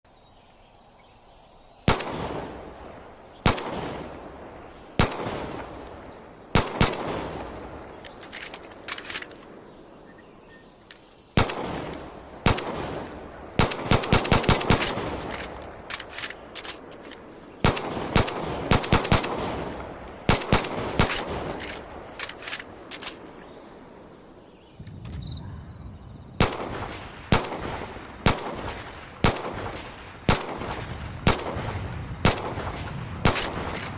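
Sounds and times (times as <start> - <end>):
pistol shots with echo: 1.9 - 2.8, 3.4 - 7.9, 11.4 - 16.8, 17.6 - 22.0, 26.3 - 33.9.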